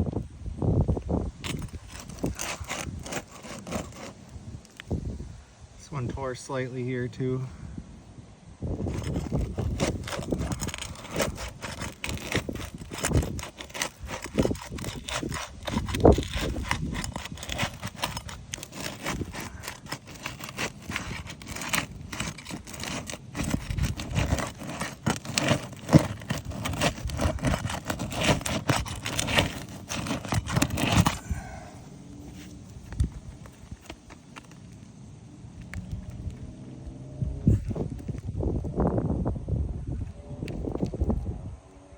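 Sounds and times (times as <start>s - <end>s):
roof shingles scraping and crackling: 1.4s - 4.9s, 8.8s - 36.4s.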